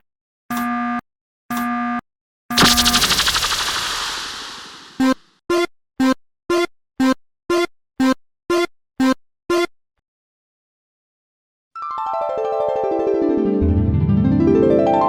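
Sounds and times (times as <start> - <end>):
noise burst: 2.6 - 5.2.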